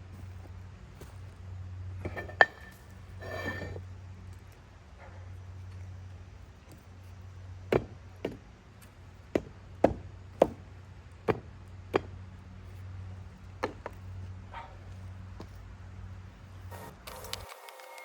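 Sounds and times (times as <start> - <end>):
steady low hum: 0.0 - 17.2
tool knocking on concrete: 7.7 - 8.4, 9.3 - 10.6, 11.3 - 12.1.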